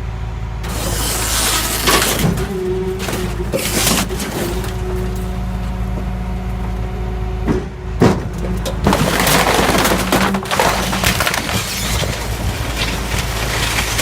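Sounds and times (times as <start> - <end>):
wood cracking and splintering: 0.6 - 5.6, 8.0 - 14.0.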